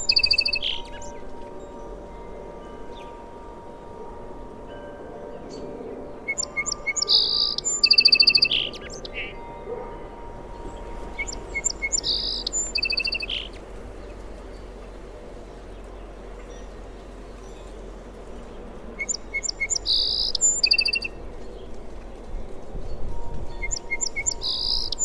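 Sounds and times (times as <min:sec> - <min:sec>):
sparrow singing: 0:00.0 - 0:21.7, 0:23.3 - 0:25.0.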